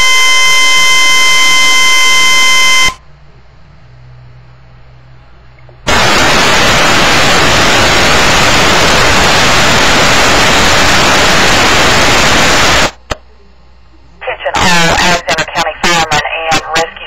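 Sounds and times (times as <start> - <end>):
loud radio static hiss: 5.8 - 17.0.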